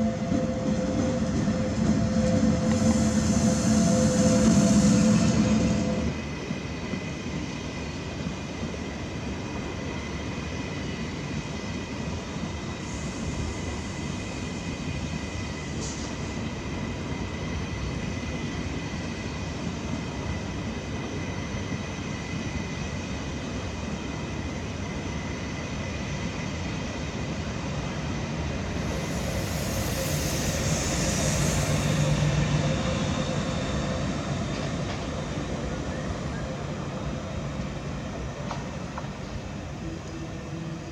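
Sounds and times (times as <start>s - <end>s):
high whining tones: 0.0s - 6.2s, 28.7s - 37.4s
electric train rumbling: 0.0s - 40.9s.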